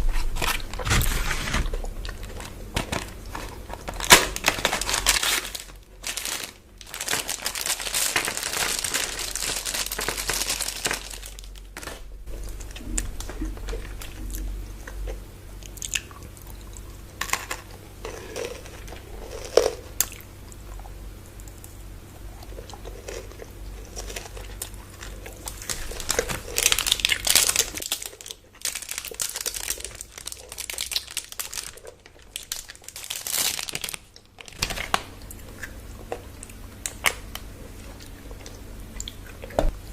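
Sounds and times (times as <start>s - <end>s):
wrapper crinkling: 0.1s - 14.4s, 23.9s - 35.1s.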